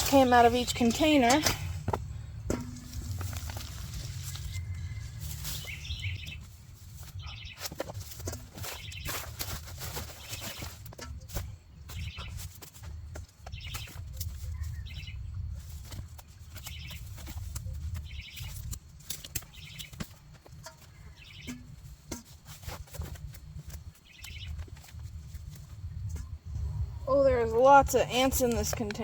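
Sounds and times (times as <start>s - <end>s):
hands digging in soil: 0.0s - 26.1s
low rumble: 25.6s - 28.2s.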